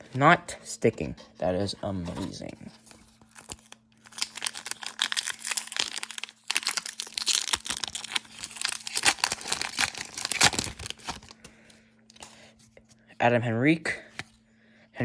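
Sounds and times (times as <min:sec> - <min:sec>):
foil wrapper crinkling: 0:02.8 - 0:12.3.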